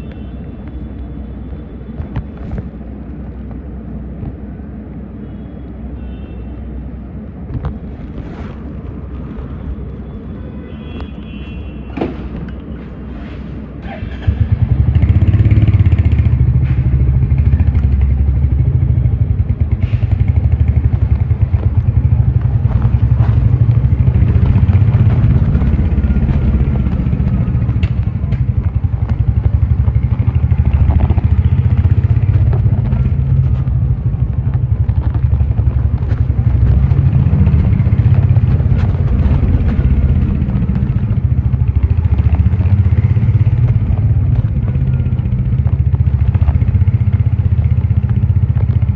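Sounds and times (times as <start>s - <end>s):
motorcycle engine running: 14.2s - 48.9s.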